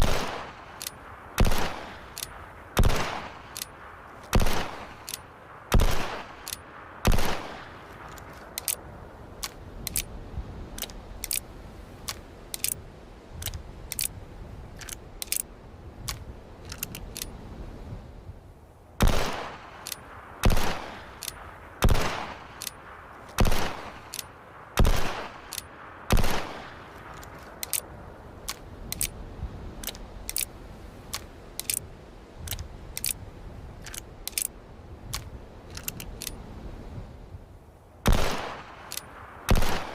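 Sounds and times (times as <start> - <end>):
light clicks: 0.4 - 6.7, 7.9 - 8.8, 9.4 - 14.2, 14.8 - 17.4, 19.6 - 21.4, 22.3 - 29.2, 29.8 - 36.6, 38.1 - 39.2.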